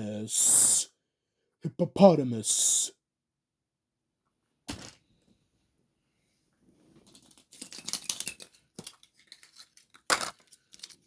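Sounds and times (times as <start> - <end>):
wrapper rustling and tearing: 7.1 - 11.0.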